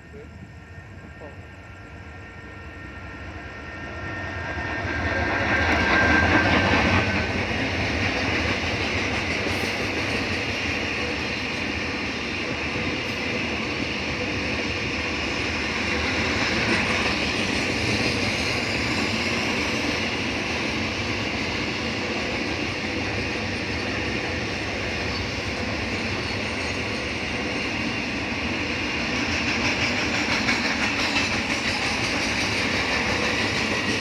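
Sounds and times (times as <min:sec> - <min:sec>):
train wheels clattering over rail joints: 0:25.8 - 0:34.0.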